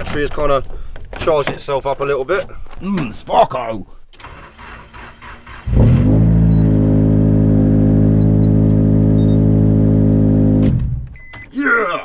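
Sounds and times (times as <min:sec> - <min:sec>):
starter motor cranking: 0:04.2 - 0:11.1
car engine idling: 0:04.2 - 0:11.2.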